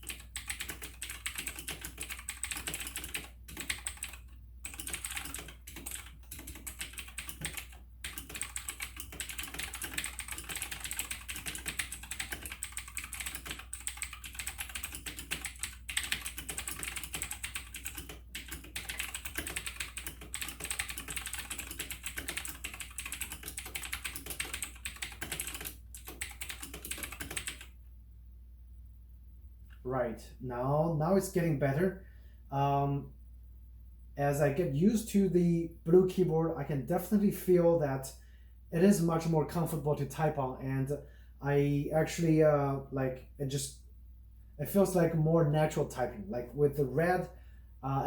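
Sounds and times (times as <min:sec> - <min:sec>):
mechanical keyboard clicking: 0:00.0 - 0:27.7.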